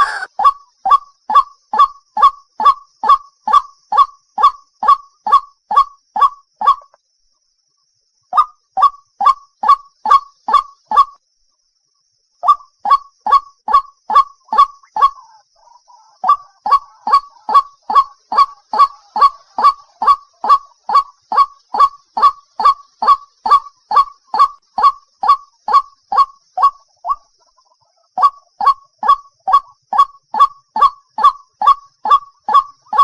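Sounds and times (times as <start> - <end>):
waterhen calling: 0.0 - 0.6, 13.3 - 33.0.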